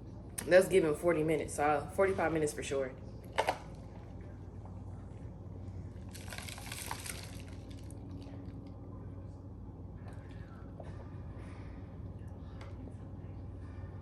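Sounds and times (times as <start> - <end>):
steady low hum: 0.0 - 14.0
liquid pouring and sloshing: 6.0 - 8.5.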